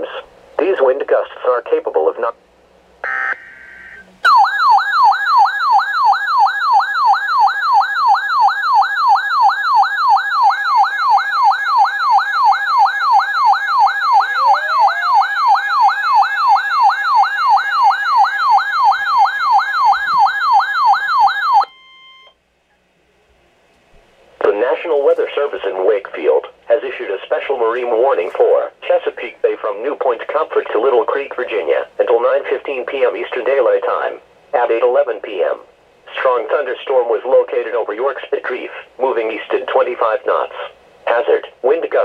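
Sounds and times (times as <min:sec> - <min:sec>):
warbling siren alarm: 0:03.0 - 0:22.4
faint steady tone: 0:21.2 - 0:23.6.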